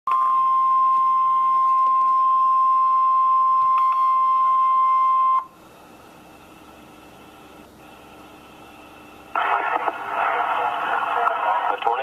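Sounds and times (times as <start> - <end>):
steady warning beep: 0.1 - 5.6.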